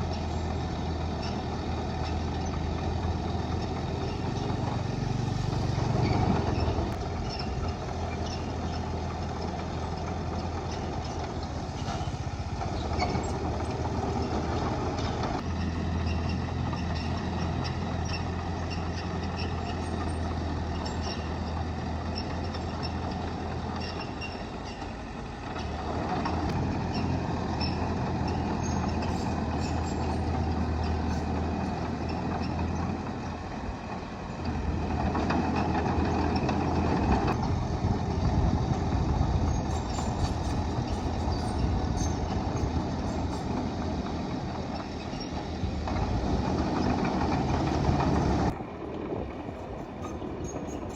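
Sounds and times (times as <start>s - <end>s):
bulldozer diesel engine running: 0.0s - 50.9s.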